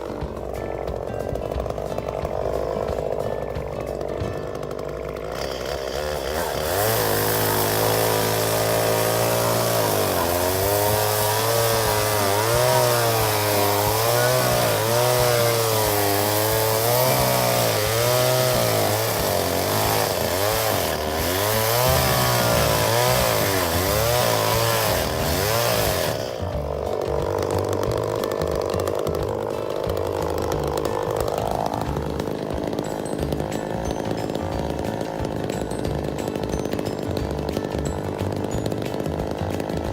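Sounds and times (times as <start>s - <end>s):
chainsaw running: 0.0s - 39.9s.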